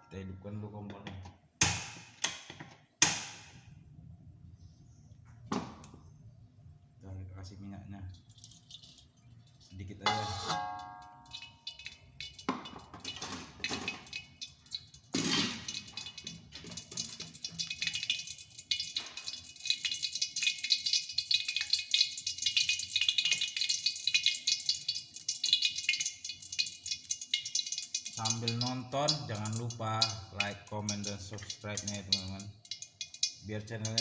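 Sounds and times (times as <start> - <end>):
oil sizzling in frying pan: 11.3 - 34.0.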